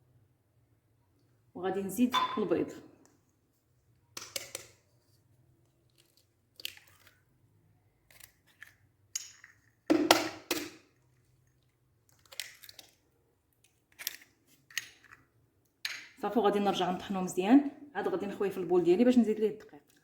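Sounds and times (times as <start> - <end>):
eggshells tapping and cracking: 8.0 - 10.8, 12.1 - 13.0.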